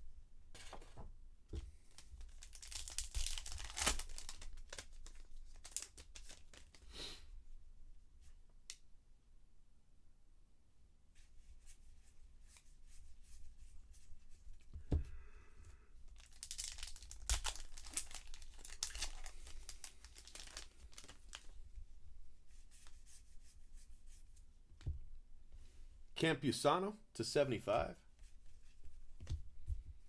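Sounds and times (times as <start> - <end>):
wrapper tearing and crinkling: 1.9 - 6.8, 16.2 - 21.6.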